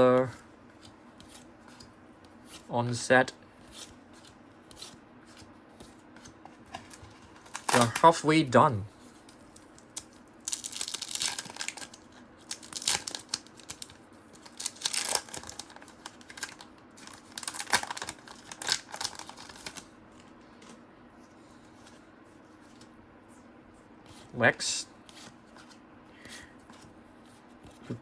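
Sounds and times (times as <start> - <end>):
paper cards rustling: 3.6 - 8.2, 9.0 - 22.9.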